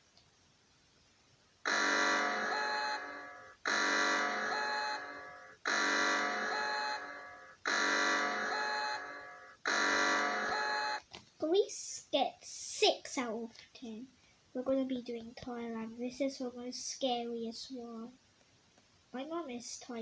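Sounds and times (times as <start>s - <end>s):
harsh buzzer alarm blasts: 1.6s - 11.0s.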